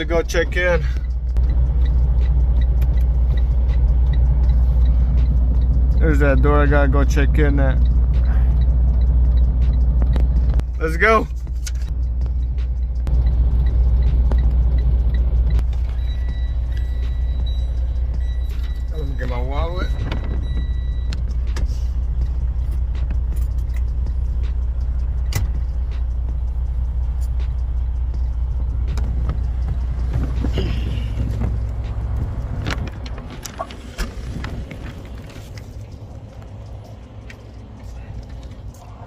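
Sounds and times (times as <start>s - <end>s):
diesel engine idling: 0.0s - 39.0s.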